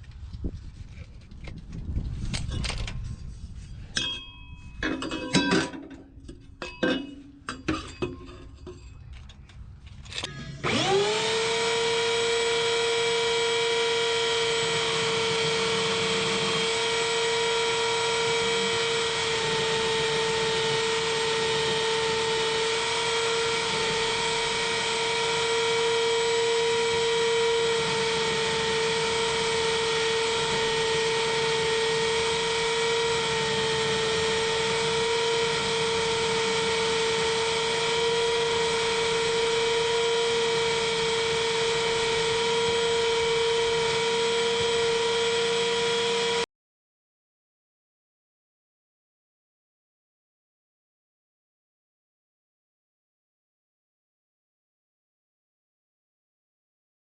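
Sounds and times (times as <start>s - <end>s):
clanks and knocks of handling: 3.9s - 10.4s
power tool motor whining: 9.1s - 46.4s.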